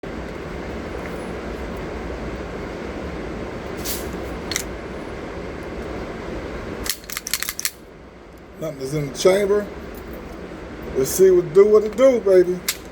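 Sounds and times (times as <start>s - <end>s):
sharp clicks and rattles: 6.8s - 7.8s.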